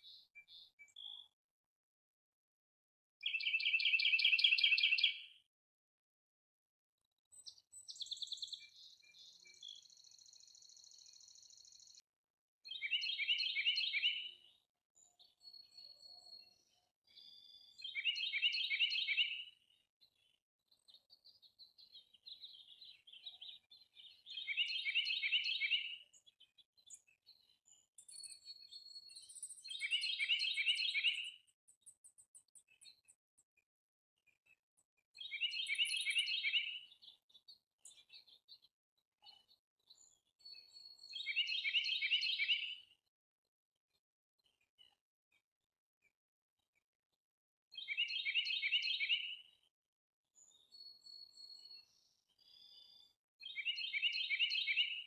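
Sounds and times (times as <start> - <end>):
soft bird chirps: 0.0 - 1.4, 3.2 - 5.5, 7.1 - 12.0, 12.6 - 33.6, 34.2 - 43.1, 50.4 - 55.0
songbird singing: 3.2 - 5.4, 7.3 - 12.0, 12.6 - 33.1, 35.2 - 38.7, 39.3 - 43.0, 47.8 - 49.5, 50.4 - 55.0.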